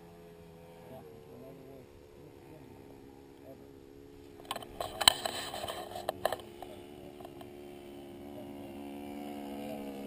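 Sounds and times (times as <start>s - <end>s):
model airplane engine running: 0.0s - 10.0s
sharp clicks and knocks: 4.4s - 7.5s.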